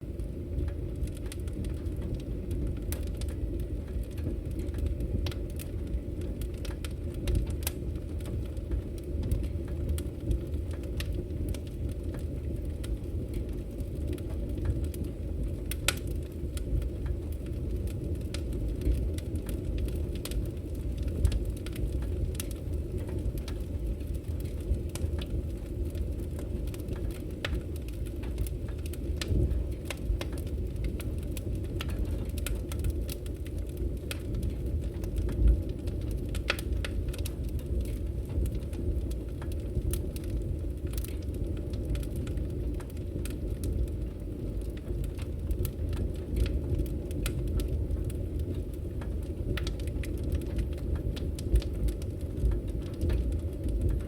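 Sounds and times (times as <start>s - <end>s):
fire crackling: 0.0s - 54.0s
fire pops and snaps: 0.0s - 54.0s
flames rumbling: 0.0s - 54.0s.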